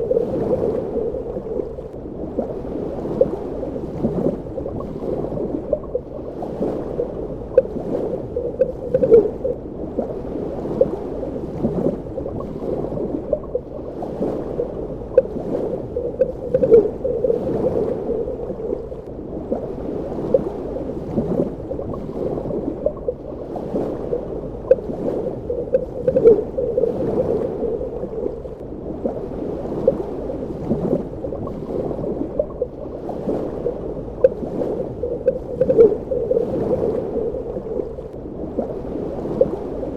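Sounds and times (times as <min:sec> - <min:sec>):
muffled underwater rush: 0:00.0 - 0:39.9
bubble pops and gurgles: 0:06.9 - 0:10.1, 0:14.5 - 0:19.0, 0:24.6 - 0:28.5, 0:34.2 - 0:38.0.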